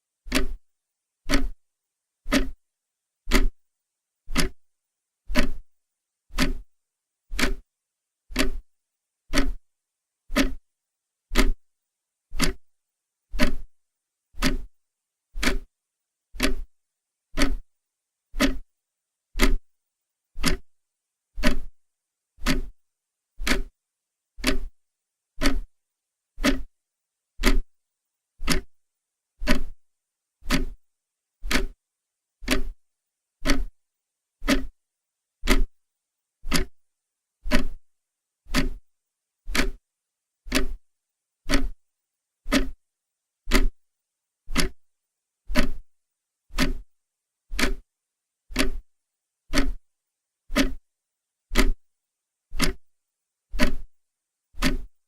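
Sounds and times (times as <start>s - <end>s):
clock ticking: 0.3s - 0.6s, 1.3s - 1.6s, 2.3s - 2.6s, 3.3s - 3.5s, 4.3s - 4.6s, 5.3s - 5.6s, 6.3s - 6.6s, 7.3s - 7.6s, 8.3s - 8.6s, 9.3s - 9.6s, 10.3s - 10.6s, 11.3s - 11.6s, 12.4s - 12.6s, 13.4s - 13.7s, 14.4s - 14.7s, 15.4s - 15.7s, 16.4s - 16.7s, 17.4s - 17.6s, 18.4s - 18.6s, 19.4s - 19.6s, 20.4s - 20.7s, 21.4s - 21.7s, 22.4s - 22.7s, 23.4s - 23.7s, 24.4s - 24.7s, 25.4s - 25.7s, 26.4s - 26.7s, 27.4s - 27.7s, 28.4s - 28.8s, 29.4s - 29.8s, 30.4s - 30.8s, 31.4s - 31.8s, 32.4s - 32.8s, 33.4s - 33.8s, 34.4s - 34.7s, 35.5s - 35.7s, 36.5s - 36.8s, 37.5s - 37.8s, 38.5s - 38.8s, 39.5s - 39.8s, 40.5s - 40.8s, 41.5s - 41.8s, 42.5s - 42.8s, 43.5s - 43.8s, 44.5s - 44.9s, 45.5s - 45.8s, 46.5s - 46.8s, 47.5s - 47.9s, 48.5s - 48.9s, 49.5s - 49.8s, 50.5s - 50.8s, 51.5s - 51.8s, 52.6s - 52.9s, 53.6s - 53.9s, 54.6s - 54.9s.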